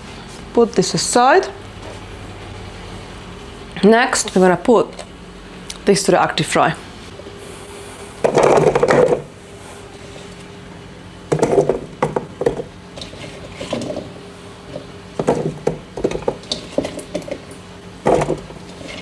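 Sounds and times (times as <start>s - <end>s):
steady low hum: 0.0s - 19.0s
containers and utensils clattering: 8.2s - 10.5s, 11.3s - 19.0s.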